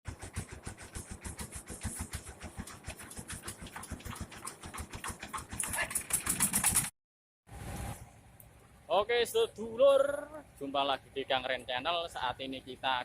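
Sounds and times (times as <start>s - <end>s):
mill engine running: 0.1s - 6.9s.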